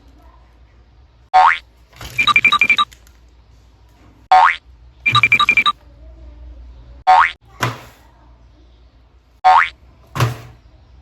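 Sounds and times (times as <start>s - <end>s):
cartoon boing sound effect: 1.4s - 1.6s, 4.3s - 4.6s, 7.1s - 7.4s, 9.5s - 9.7s.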